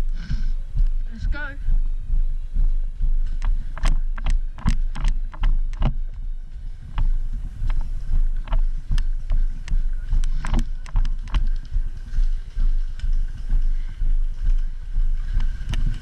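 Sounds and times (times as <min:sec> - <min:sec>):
microphone handling noise: 0:00.0 - 0:16.0
wind rumble: 0:00.0 - 0:16.0
sharp clicks and knocks: 0:03.0 - 0:06.2, 0:06.9 - 0:11.9.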